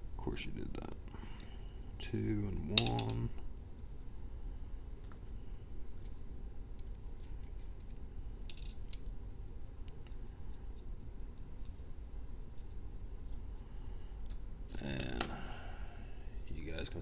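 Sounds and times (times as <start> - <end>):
small metal lock parts clinking: 2.7 - 3.3, 6.8 - 9.2.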